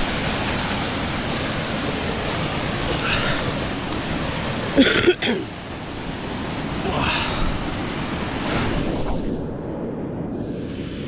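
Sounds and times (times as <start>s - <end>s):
waterfall rushing over rocks: 0.0s - 8.0s.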